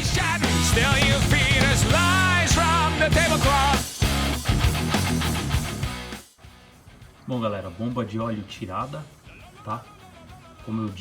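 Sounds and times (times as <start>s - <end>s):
rock music with singing: 0.0s - 11.0s.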